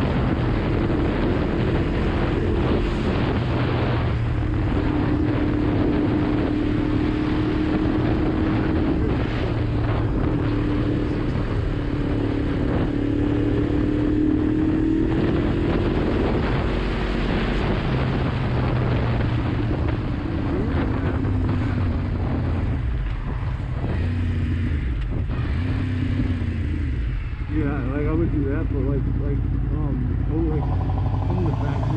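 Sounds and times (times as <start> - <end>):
wind on microphone: 0.0 - 31.9
motorcycle engine running: 23.8 - 31.9.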